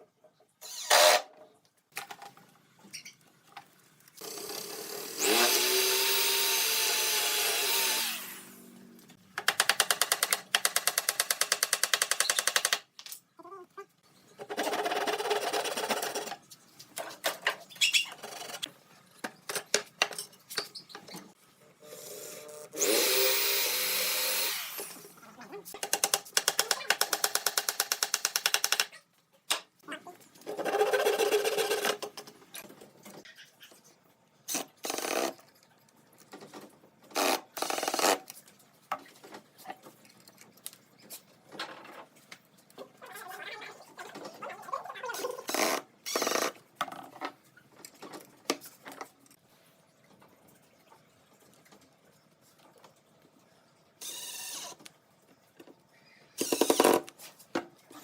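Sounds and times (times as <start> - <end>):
handheld power tool running: 4.2 - 8.6, 22.8 - 25.0.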